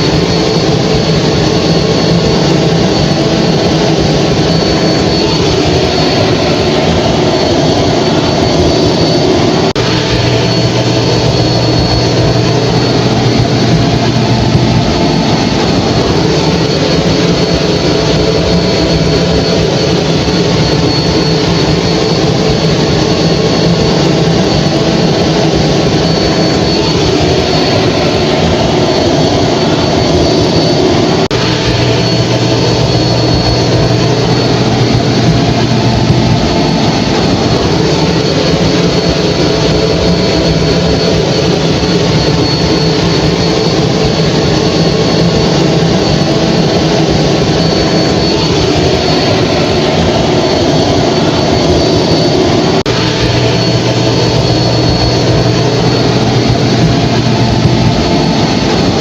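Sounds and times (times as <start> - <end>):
hair dryer running: 0.0 - 22.4.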